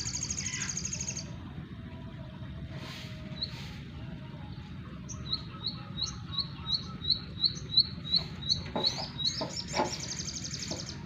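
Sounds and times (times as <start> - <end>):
bird chirping: 0.0 - 1.3, 4.4 - 11.0.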